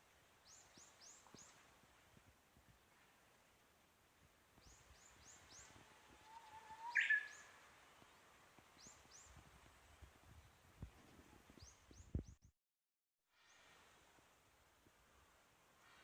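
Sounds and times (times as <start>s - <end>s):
small bird high chirps: 4.6s - 7.5s
bird whistling song: 4.6s - 7.6s.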